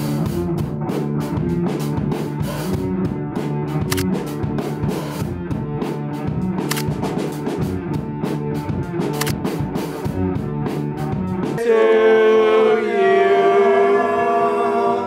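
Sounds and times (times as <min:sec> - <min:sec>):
band music with drums bass guitar: 0:00.0 - 0:11.6.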